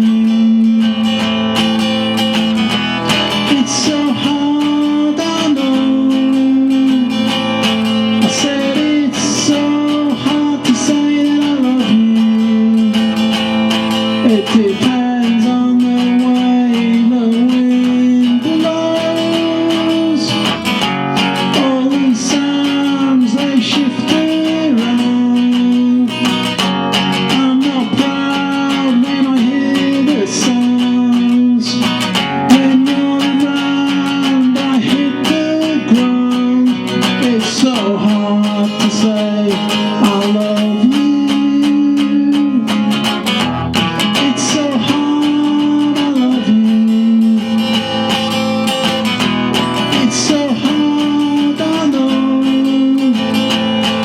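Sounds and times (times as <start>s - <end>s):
acoustic guitar strumming: 0.0s - 54.0s.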